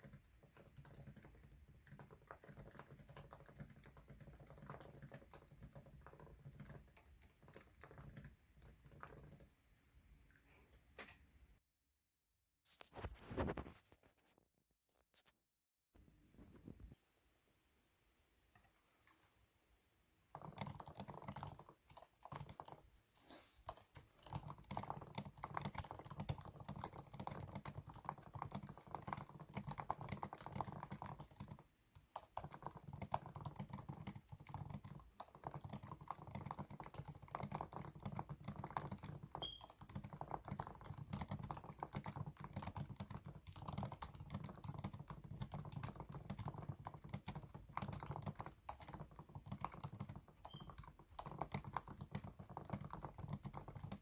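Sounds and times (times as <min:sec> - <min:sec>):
fast typing on keyboard: 0:00.0 - 0:09.6, 0:20.3 - 0:22.9, 0:23.6 - 0:54.0.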